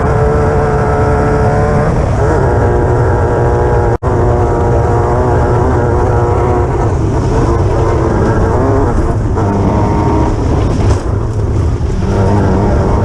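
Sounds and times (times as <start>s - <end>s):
buggy engine at high revs: 0.0s - 13.0s
rush of driving noise: 0.0s - 13.0s.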